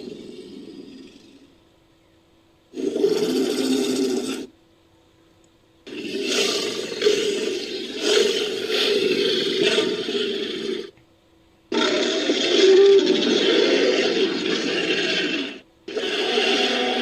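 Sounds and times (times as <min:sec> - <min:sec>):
rhinoceros roaring: 0:02.7 - 0:04.5, 0:05.9 - 0:10.9, 0:11.7 - 0:17.0.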